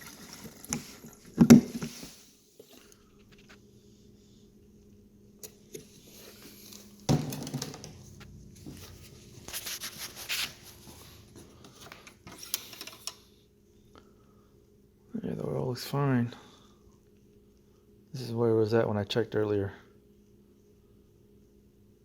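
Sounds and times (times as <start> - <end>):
clicks scrapes and rustles: 0.0 - 3.6, 8.2 - 13.2
faint steady hum: 0.0 - 22.0.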